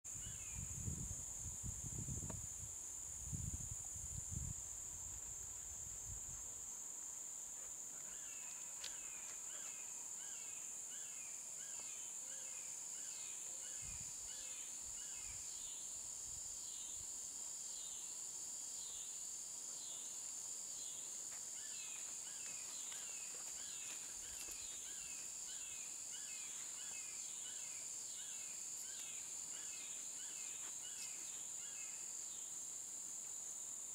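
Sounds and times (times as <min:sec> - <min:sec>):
low rumbles of wind: 0:00.1 - 0:06.5
insects trilling: 0:00.1 - 0:33.9.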